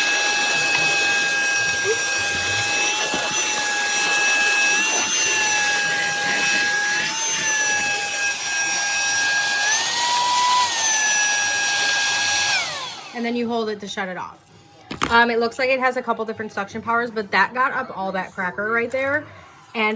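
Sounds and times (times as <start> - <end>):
handheld vacuum whining: 0.0 - 13.4.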